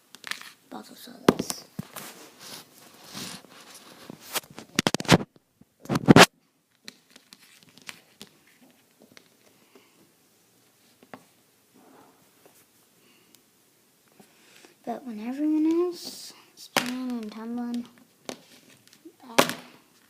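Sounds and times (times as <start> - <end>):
scratching and rustling handling: 1.4 - 5.3, 5.9 - 9.9, 14.2 - 20.0.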